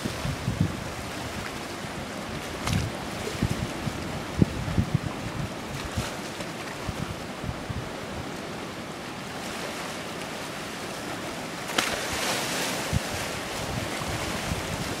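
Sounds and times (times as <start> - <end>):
wind buffeting microphone: 0.0 - 6.2, 6.8 - 8.4, 12.0 - 15.0
waves washing on sand: 0.0 - 15.0.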